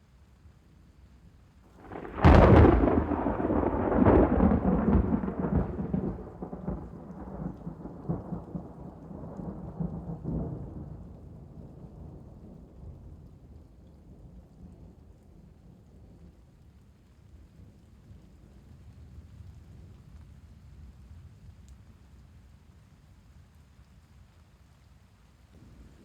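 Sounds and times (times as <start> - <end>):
thunderclap with long rumble: 1.8 - 13.5.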